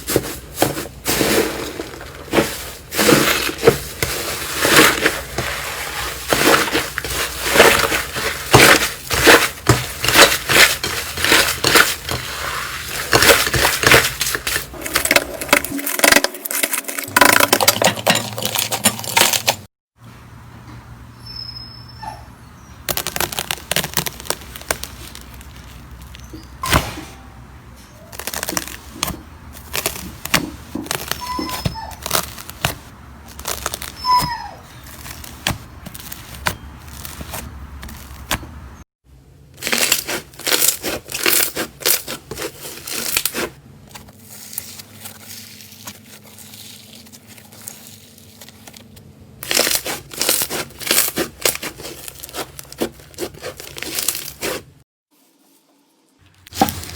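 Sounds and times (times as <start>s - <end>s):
slime crackling and popping: 22.9s - 26.2s, 28.1s - 31.3s, 32.0s - 34.1s, 49.4s - 54.6s.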